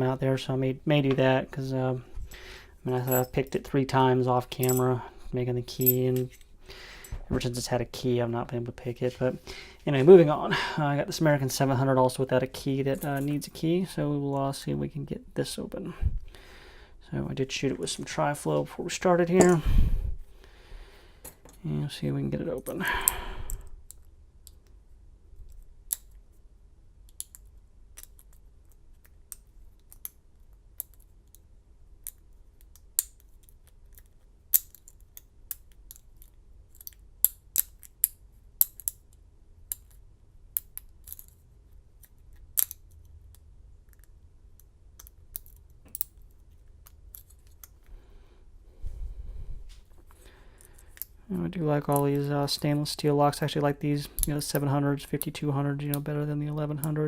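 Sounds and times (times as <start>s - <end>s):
lock pick clicking in padlock: 33.9s - 39.1s.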